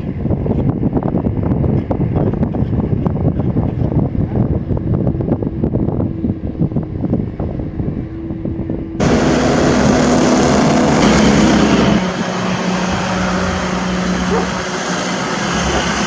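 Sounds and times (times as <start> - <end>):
wind buffeting microphone: 0.0 - 16.0
construction machine engine running: 4.4 - 16.0.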